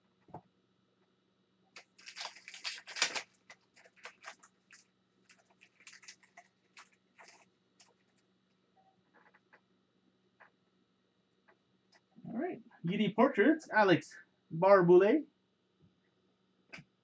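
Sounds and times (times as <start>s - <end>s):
wrapper crinkling and rustling: 1.8s - 8.2s.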